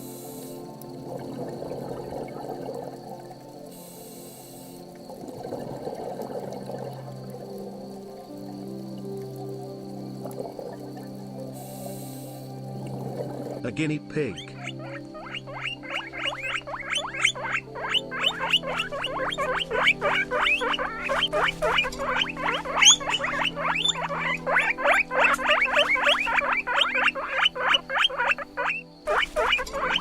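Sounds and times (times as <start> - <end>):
guinea pig squeaking: 14.4 - 30.0.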